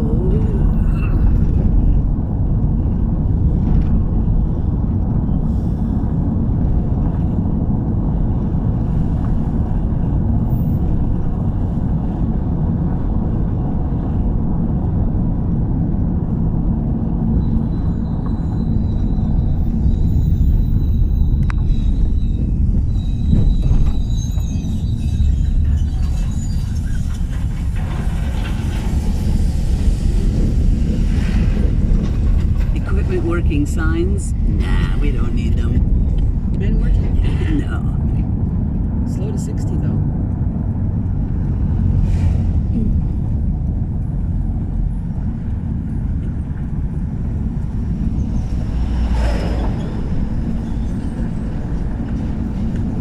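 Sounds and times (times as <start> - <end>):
vehicle engine rumble from inside: 0.0 - 53.0.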